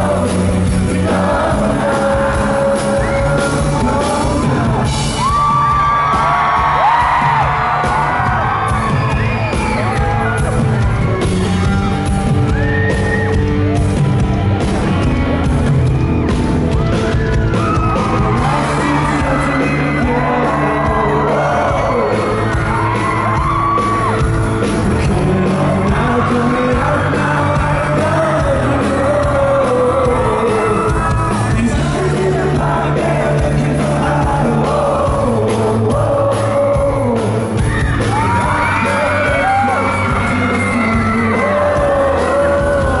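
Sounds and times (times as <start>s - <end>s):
male lead vocal: 0.0s - 8.4s, 18.0s - 43.0s
audience yelling and whooping: 0.0s - 43.0s
live pop rock band: 0.0s - 43.0s.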